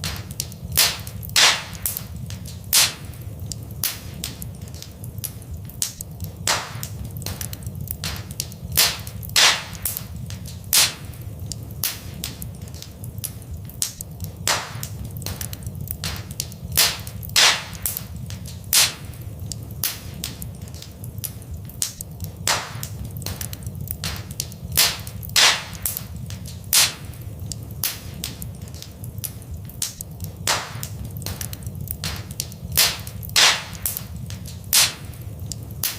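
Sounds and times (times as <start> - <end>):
low fire rumble: 0.0 - 35.9
wood fire crackling: 0.0 - 35.9.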